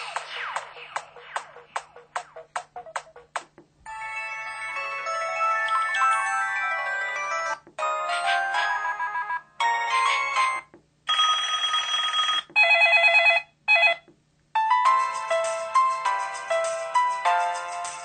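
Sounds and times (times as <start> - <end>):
electronic ringtone melodies: 3.9 - 14.0, 14.6 - 17.6
phone buzzing tone: 11.1 - 14.1.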